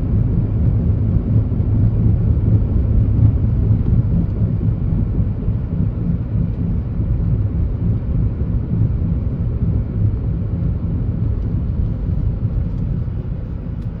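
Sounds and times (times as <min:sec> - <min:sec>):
road noise: 0:00.0 - 0:14.0
vehicle engine drone: 0:00.0 - 0:14.0.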